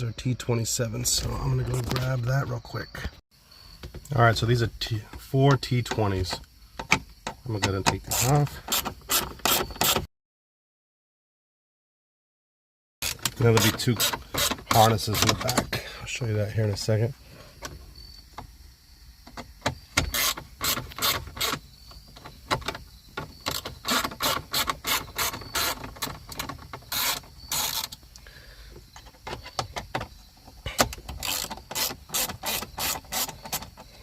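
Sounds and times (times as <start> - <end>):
ratchet clicking: 20.0 - 21.6, 23.5 - 28.0, 30.8 - 33.8.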